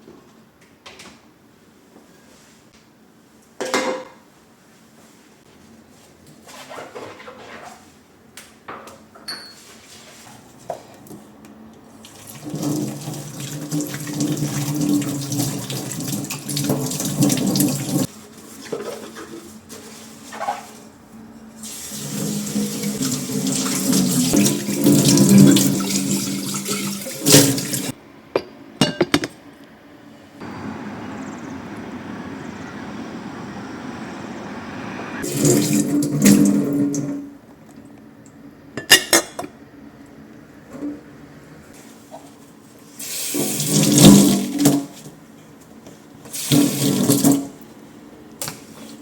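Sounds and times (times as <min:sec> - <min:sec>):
tap water running into sink: 0:12.0 - 0:18.1, 0:21.6 - 0:27.9, 0:35.2 - 0:37.2, 0:43.0 - 0:44.9, 0:46.3 - 0:47.6.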